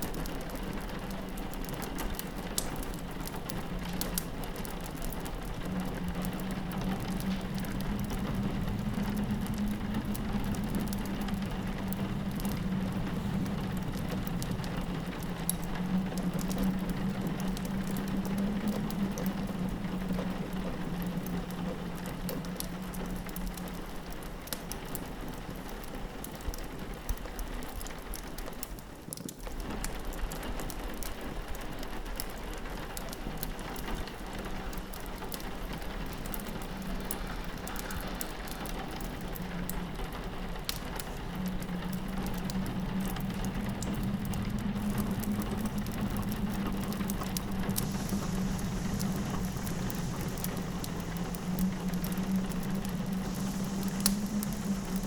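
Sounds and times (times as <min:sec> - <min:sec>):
rain pattering on a window: 0:00.0 - 0:55.0
wood fire crackling: 0:00.0 - 0:55.0
low hum: 0:36.8 - 0:55.0.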